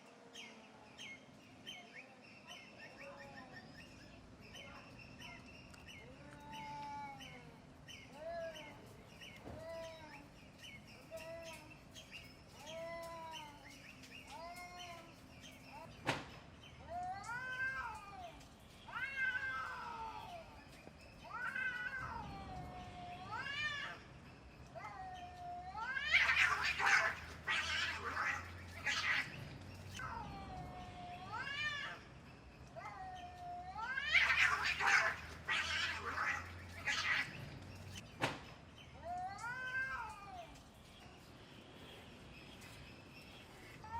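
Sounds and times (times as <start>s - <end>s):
cats yowling: 16.9s - 24.1s, 24.7s - 32.1s, 32.7s - 37.9s, 39.0s - 40.6s
cats screeching: 17.0s - 24.1s, 24.7s - 38.0s, 39.0s - 40.6s.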